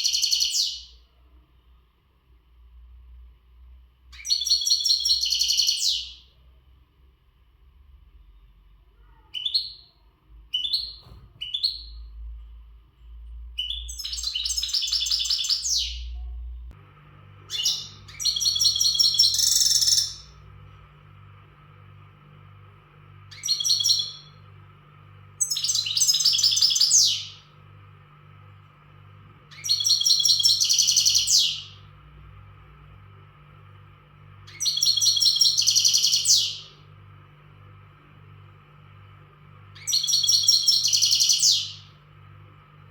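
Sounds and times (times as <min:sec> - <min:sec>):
goldfinch twittering song: 0:00.0 - 0:00.9, 0:04.2 - 0:06.2, 0:13.6 - 0:16.1, 0:17.5 - 0:20.3, 0:23.3 - 0:24.4, 0:25.4 - 0:27.4, 0:29.5 - 0:31.8, 0:34.5 - 0:36.8, 0:39.8 - 0:41.9
goldfinch calls: 0:04.2 - 0:06.2, 0:13.6 - 0:16.0, 0:17.5 - 0:20.3, 0:23.3 - 0:24.3, 0:25.4 - 0:27.4, 0:29.5 - 0:31.8, 0:34.5 - 0:36.7, 0:39.8 - 0:41.8
steady low hum: 0:06.1 - 0:42.9.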